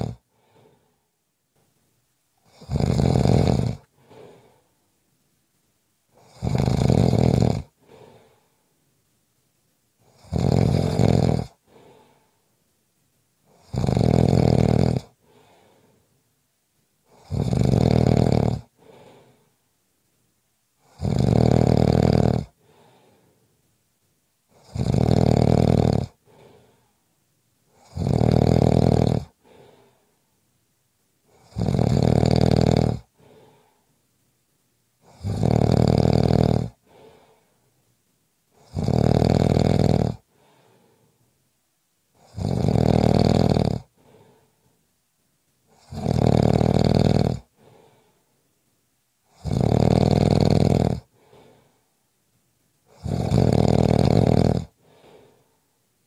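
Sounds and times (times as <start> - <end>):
person snoring loudly: 0.0 - 0.2, 2.4 - 3.9, 6.2 - 7.8, 10.1 - 11.8, 13.5 - 15.5, 17.1 - 19.0, 20.8 - 23.0, 24.5 - 26.6, 27.8 - 29.6, 31.3 - 33.4, 35.0 - 37.1, 38.6 - 40.3, 42.2 - 43.9, 45.7 - 47.5, 49.3 - 51.1, 52.9 - 55.1
faint short breath: 0.3 - 1.2, 3.9 - 4.8, 7.8 - 8.8, 11.6 - 12.6, 15.2 - 16.2, 18.8 - 19.6, 22.6 - 23.6, 26.2 - 27.1, 29.4 - 30.4, 33.1 - 34.0, 36.8 - 37.8, 40.3 - 41.3, 44.0 - 44.8, 47.5 - 48.4, 51.1 - 52.0, 54.8 - 55.8.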